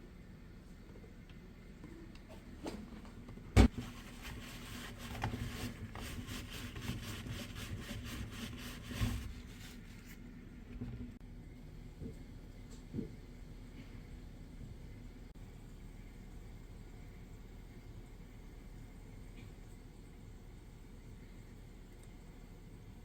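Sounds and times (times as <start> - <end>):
cloth wiping refrigerator: 3.6 - 11.2.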